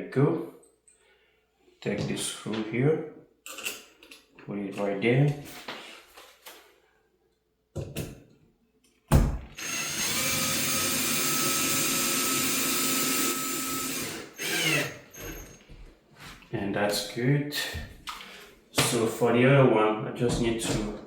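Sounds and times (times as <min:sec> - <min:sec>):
power drill driving screw: 0:09.6 - 0:15.6.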